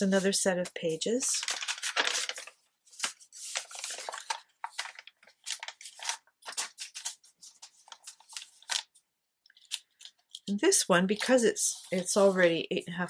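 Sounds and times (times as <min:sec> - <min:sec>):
paper rustling and scraping: 0:00.9 - 0:09.0, 0:11.1 - 0:12.8.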